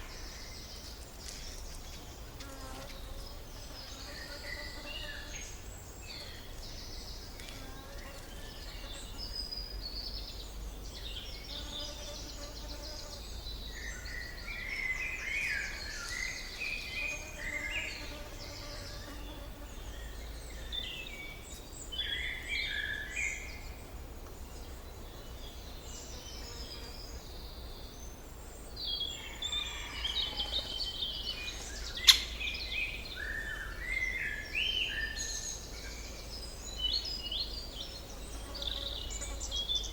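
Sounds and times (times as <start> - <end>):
songbirds singing: 0.0 - 39.9
sharp click: 32.0 - 32.3.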